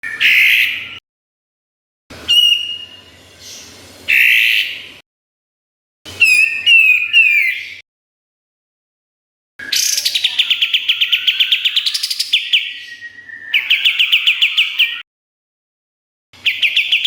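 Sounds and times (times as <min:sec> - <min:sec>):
songbird whistling and chirping: 0:00.0 - 0:01.0, 0:02.3 - 0:04.8, 0:06.1 - 0:07.8, 0:09.6 - 0:15.0, 0:16.4 - 0:17.0.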